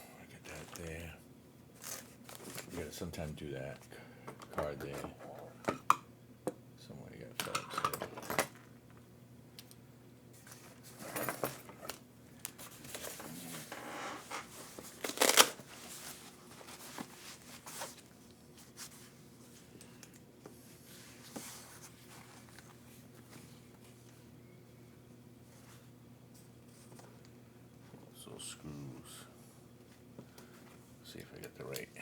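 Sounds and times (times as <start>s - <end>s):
rustling: 1.8s - 2.8s, 12.5s - 19.6s.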